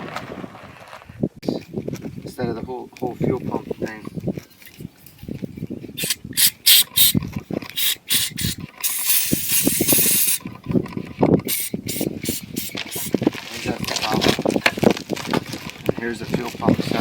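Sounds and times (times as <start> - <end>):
hand tools clicking and ratcheting: 6.0 - 13.2
steady hiss: 7.8 - 10.4, 11.5 - 13.2.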